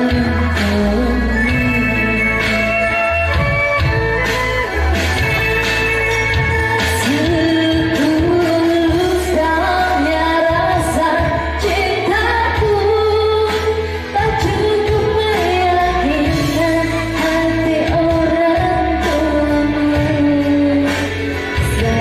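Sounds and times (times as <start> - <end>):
bass line: 0.0 - 22.0
person singing: 0.0 - 22.0.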